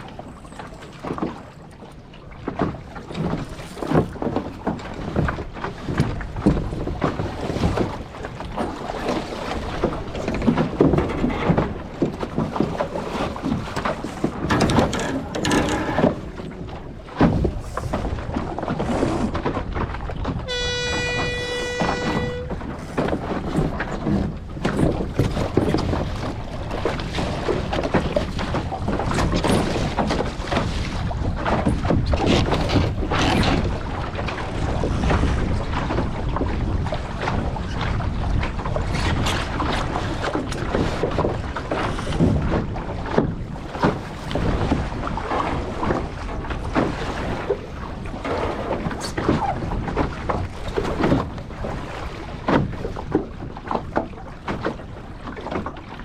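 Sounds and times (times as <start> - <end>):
water rushing along hull: 0.0 - 56.0
wind buffeting microphone: 0.0 - 56.0
horn blast: 20.5 - 22.8.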